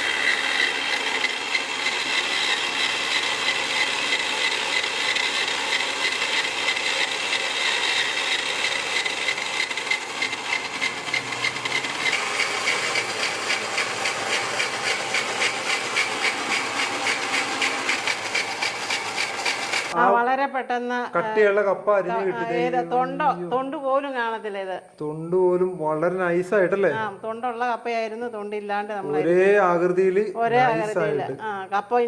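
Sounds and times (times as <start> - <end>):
motor whine: 0.0 - 20.0.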